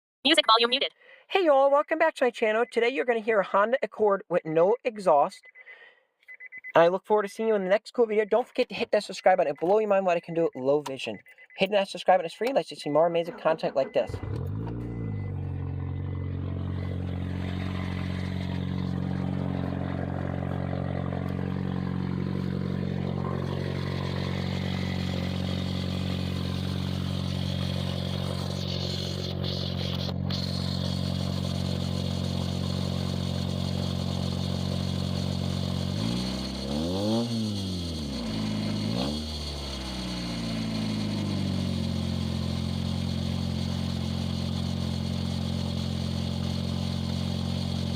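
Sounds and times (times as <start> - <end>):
engine throttle blips: 12.9 - 47.9
car engine idling without muffler: 13.3 - 47.9.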